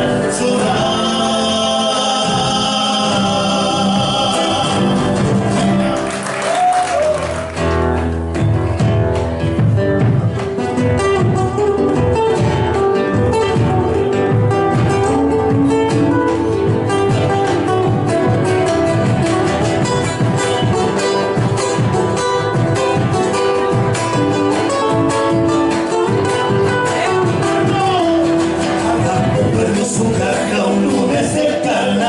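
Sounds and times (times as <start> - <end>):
voices singing folk song: 0.0 - 6.0, 16.3 - 32.0
bass guitar: 0.0 - 32.0
strummed guitar: 0.0 - 32.0.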